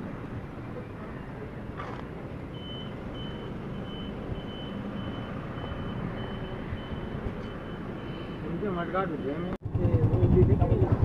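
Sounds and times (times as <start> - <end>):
high-pitched beeps: 2.5 - 9.6
motorcycle engine rumbling: 9.6 - 11.0.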